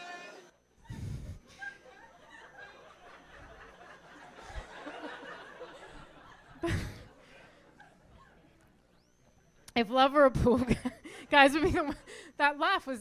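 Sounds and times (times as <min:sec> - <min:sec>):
audience laughing: 0:01.4 - 0:08.7.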